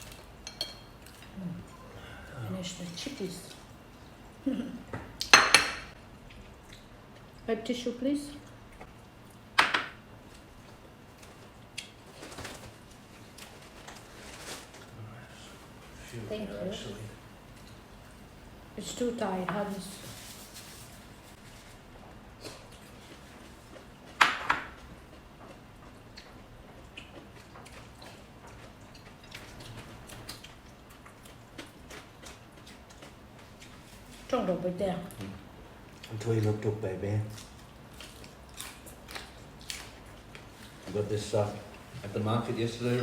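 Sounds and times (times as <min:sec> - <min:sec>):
mouth sounds of people eating: 0:00.0 - 0:05.3, 0:24.8 - 0:43.0.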